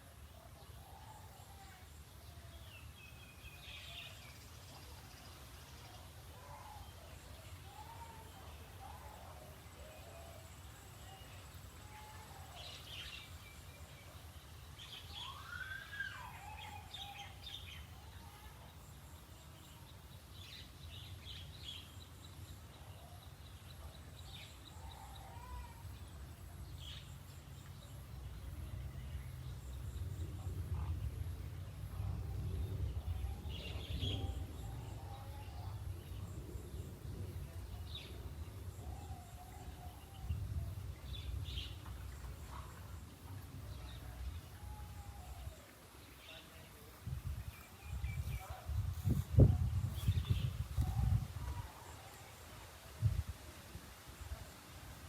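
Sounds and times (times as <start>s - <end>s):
birds chirping: 2.2s - 52.5s
whistled bird call: 15.0s - 17.4s
low rumbling noise: 28.1s - 45.7s.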